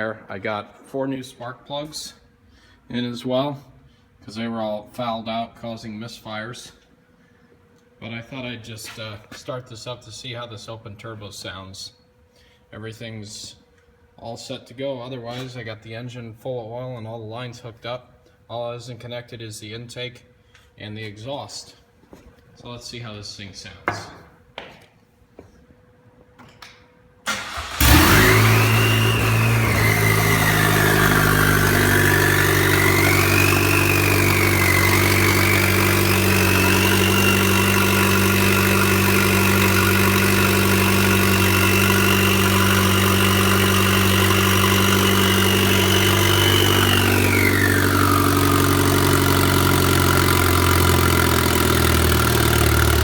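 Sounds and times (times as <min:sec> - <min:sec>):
car engine cranking and idling: 0:27.3 - 0:53.0
high turbo whistle: 0:27.8 - 0:38.4.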